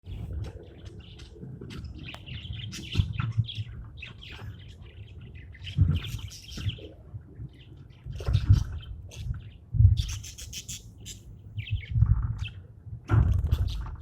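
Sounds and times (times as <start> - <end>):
budgerigars chirping: 10.0 - 12.6.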